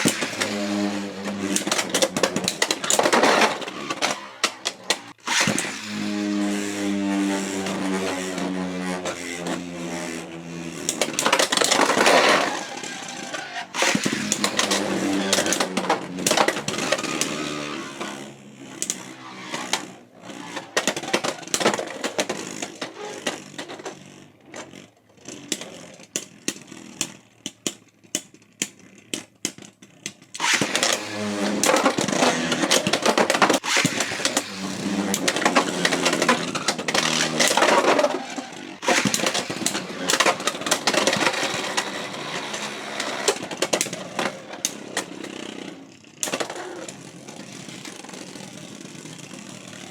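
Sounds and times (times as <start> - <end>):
spinning tops whirring: 0.0 - 23.8, 30.4 - 49.9
tops clicking and clacking: 25.3 - 48.2.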